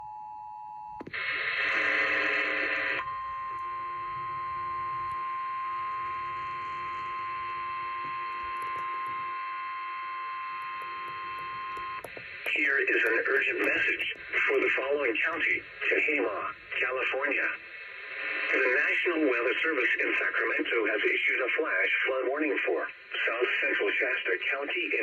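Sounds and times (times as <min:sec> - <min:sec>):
two-tone attention signal: 0:03.0 - 0:12.1.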